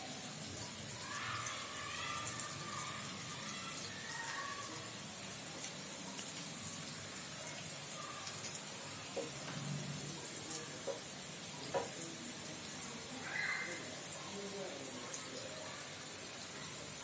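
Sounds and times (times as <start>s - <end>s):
potatoes sizzling in oil: 0.0s - 17.0s.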